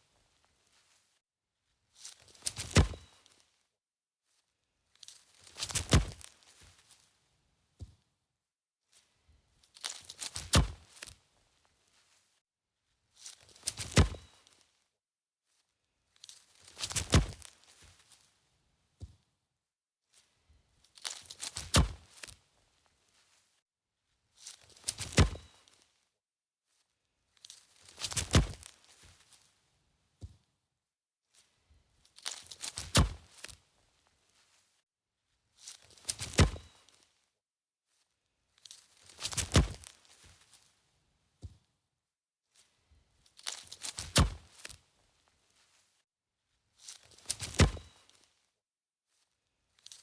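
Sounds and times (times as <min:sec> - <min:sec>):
foot kicking a football: 0:02.7 - 0:03.1, 0:25.1 - 0:25.5, 0:36.3 - 0:36.7, 0:44.1 - 0:44.5, 0:47.5 - 0:47.9.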